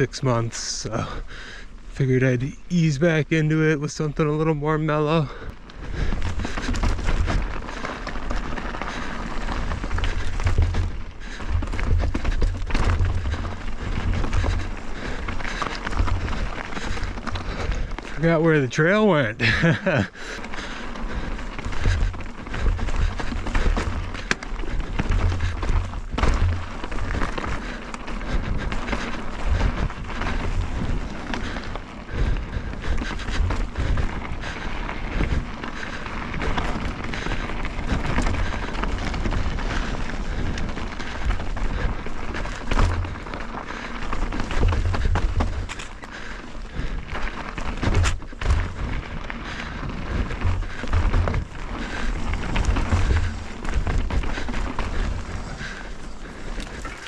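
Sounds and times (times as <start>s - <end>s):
bike clattering over rocks: 5.9s - 18.4s, 19.5s - 57.0s
wind buffeting microphone: 19.4s - 57.0s.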